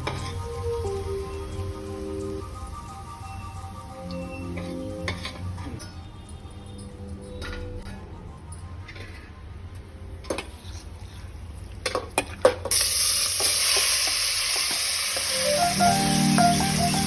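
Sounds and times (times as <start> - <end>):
music: 0.0 - 9.9, 15.2 - 17.0
food sizzling in hot fat: 12.7 - 17.0.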